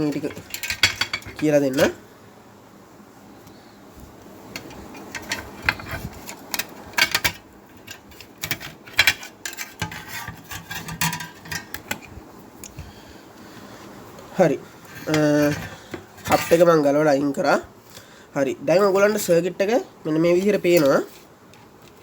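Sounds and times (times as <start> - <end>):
clicks and rattles of disassembly: 0.0 - 1.9, 4.5 - 12.8.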